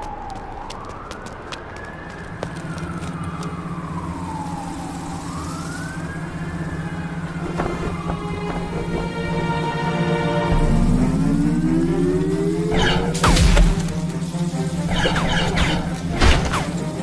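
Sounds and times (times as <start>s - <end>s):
emergency vehicle siren wailing: 0.0s - 17.0s
steady low hum: 2.4s - 16.7s.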